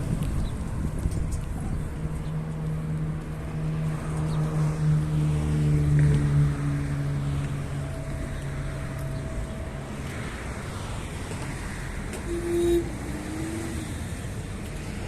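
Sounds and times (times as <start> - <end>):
street traffic noise: 0.0 - 15.0
vehicle engine hum: 0.0 - 15.0
brief sliding tone: 12.2 - 13.8
short steady tone: 12.2 - 13.8.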